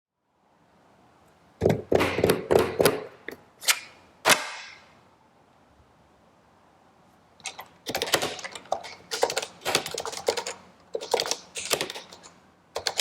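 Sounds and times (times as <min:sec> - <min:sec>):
keyboard keystrokes: 0:07.4 - 0:13.0.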